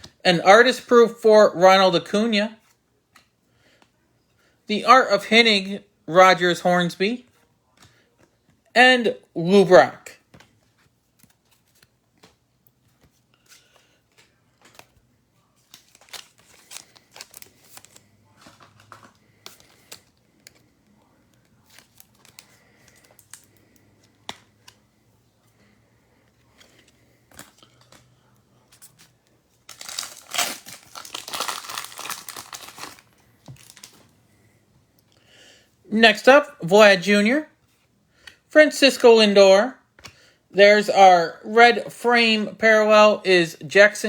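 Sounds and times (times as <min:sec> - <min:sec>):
cards clicking and rustling: 0:02.6 - 0:04.0, 0:07.3 - 0:08.6, 0:10.2 - 0:34.2, 0:39.9 - 0:40.2
wrapper crinkling and tearing: 0:15.6 - 0:20.7, 0:28.8 - 0:34.1.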